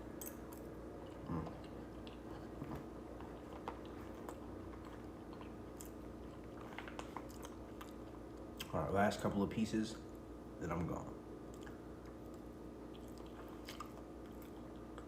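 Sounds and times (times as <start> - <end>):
faint steady hum: 0.0 - 15.0
person chewing: 0.2 - 8.7, 11.5 - 15.0.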